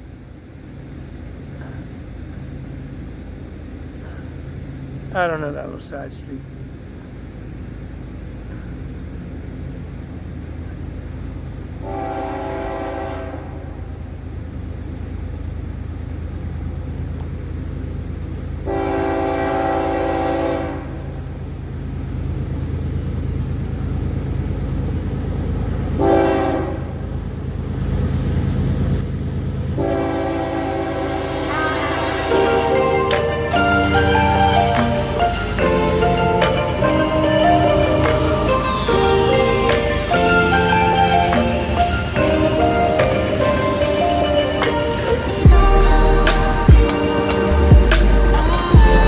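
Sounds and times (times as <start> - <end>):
train rumbling: 0.0 - 49.0
locomotive air horn blasts: 11.8 - 13.9, 18.7 - 21.2, 26.0 - 27.0, 29.8 - 49.0.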